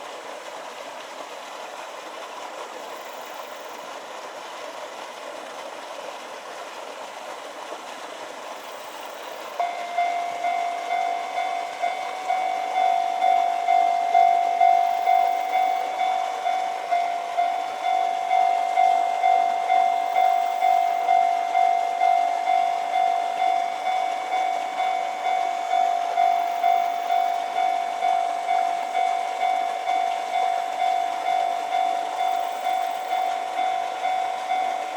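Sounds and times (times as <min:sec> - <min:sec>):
level crossing bell alarm: 0:09.6 - 0:34.9.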